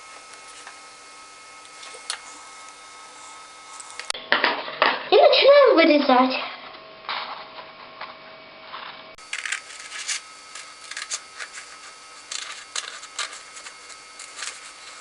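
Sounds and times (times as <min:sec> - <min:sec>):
scissors snipping paper: 0:09.3 - 0:15.0.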